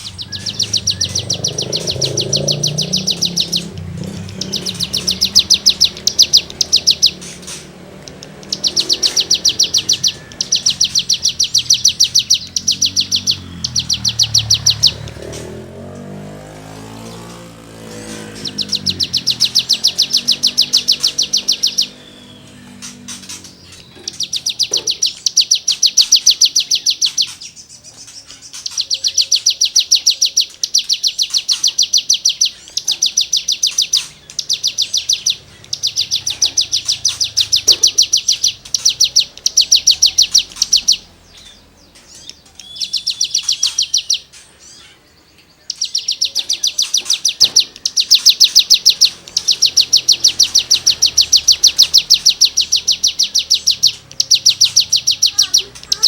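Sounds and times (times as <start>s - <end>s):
songbird singing rasping notes: 0.0s - 56.0s.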